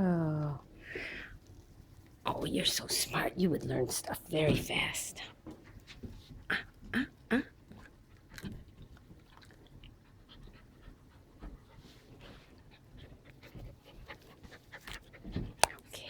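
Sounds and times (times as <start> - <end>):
puppy chewing and biting: 5.4 - 16.0.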